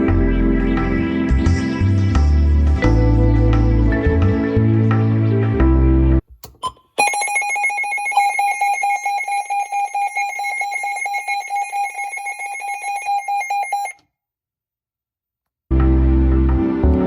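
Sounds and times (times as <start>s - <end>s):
pulsing electronic alarm beep: 7.0s - 14.0s.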